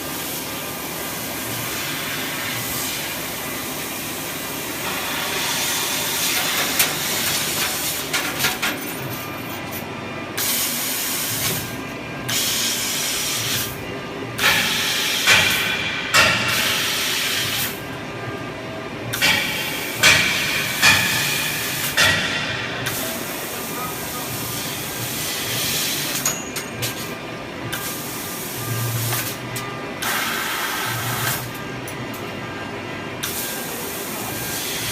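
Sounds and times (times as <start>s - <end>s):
laser cutter gas hiss: 0.2s - 3.6s, 4.8s - 8.0s, 14.4s - 17.8s, 19.2s - 26.2s, 30.0s - 31.4s.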